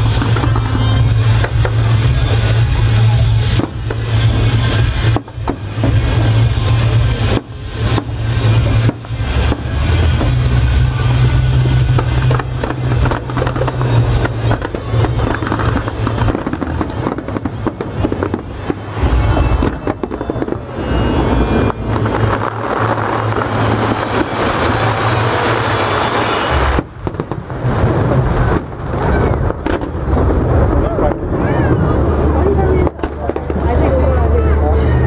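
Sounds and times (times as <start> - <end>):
fireworks crackling and banging: 0.0 - 35.0.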